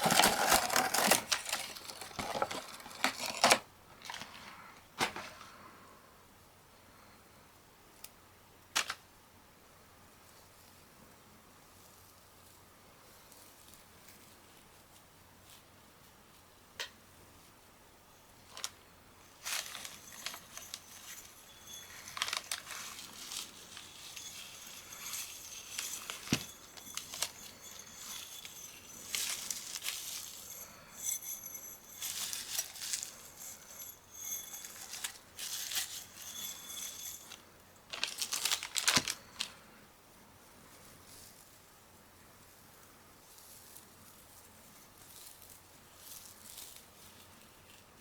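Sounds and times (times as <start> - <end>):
crinkling and rustling material: 0.0 - 5.4, 18.5 - 39.6.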